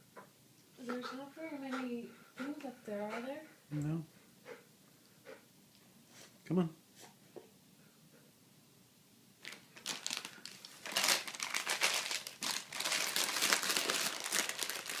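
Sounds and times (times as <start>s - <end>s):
dense crinkling and rustling: 9.4s - 15.0s.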